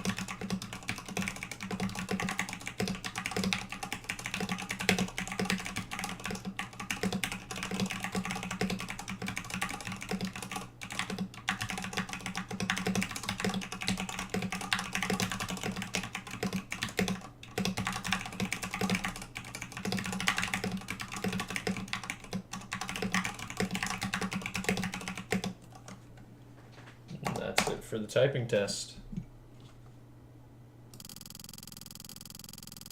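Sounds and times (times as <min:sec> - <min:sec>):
mechanical keyboard typing: 0:00.0 - 0:25.9.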